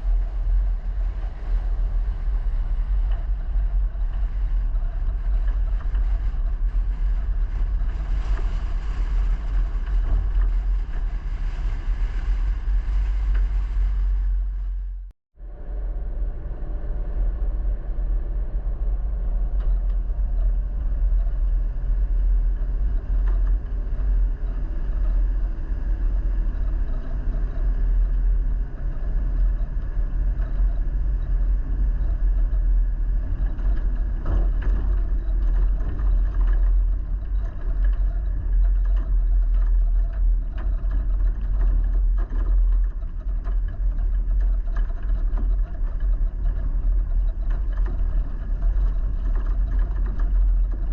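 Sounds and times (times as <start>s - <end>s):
small rattles and knocks: 32.0s - 50.9s.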